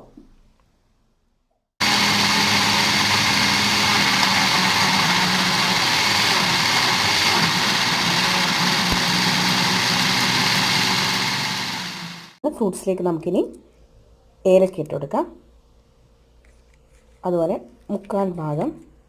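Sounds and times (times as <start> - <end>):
blender motor winding down: 1.8 - 12.4
kitchen blender running: 1.8 - 12.4.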